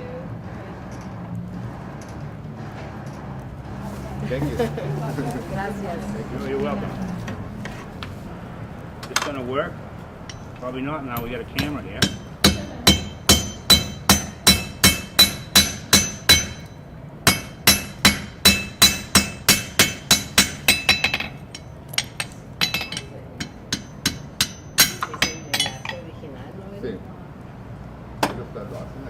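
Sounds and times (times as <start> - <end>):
hammer striking iron on anvil: 10.2 - 26.1.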